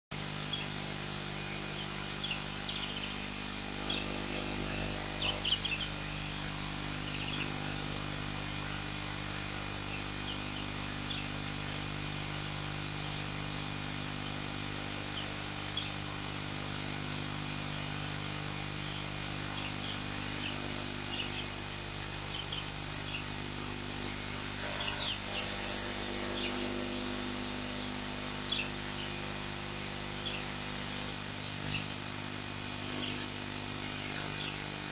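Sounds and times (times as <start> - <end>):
steady low hum: 0.1 - 34.9
bird chirps: 1.8 - 3.2, 3.8 - 7.6, 18.8 - 21.5, 22.3 - 23.3, 24.6 - 25.6, 26.3 - 26.7, 28.4 - 29.2, 30.2 - 30.5, 31.7 - 32.0, 32.8 - 34.6.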